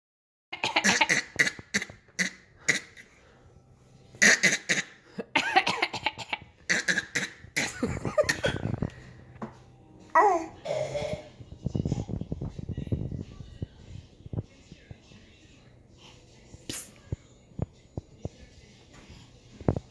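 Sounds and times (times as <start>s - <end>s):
person fake-coughing: 4.2s - 8.8s.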